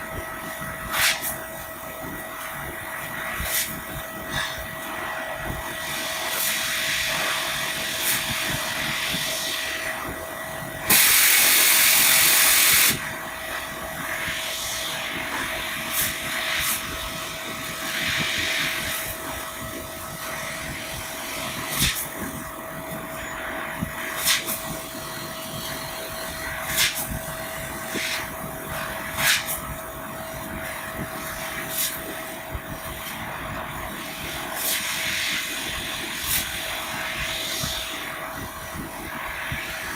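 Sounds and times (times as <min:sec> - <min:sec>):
machine hum with high tone: 0:00.0 - 0:39.9
loud hiss: 0:10.8 - 0:13.3.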